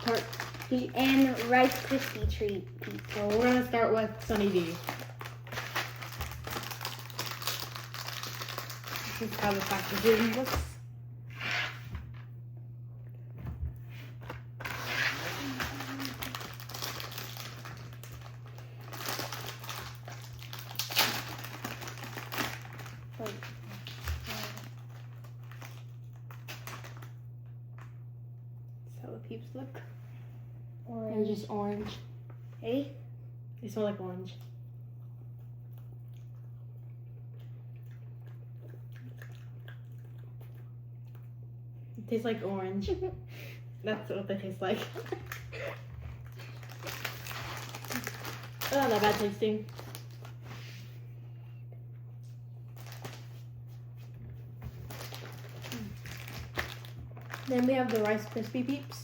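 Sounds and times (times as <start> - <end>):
plastic wrapper crinkling: 0.0 - 10.8, 14.6 - 27.2, 44.7 - 50.6, 52.6 - 59.0
steady low hum: 0.0 - 59.0
soft chewing: 34.4 - 42.0.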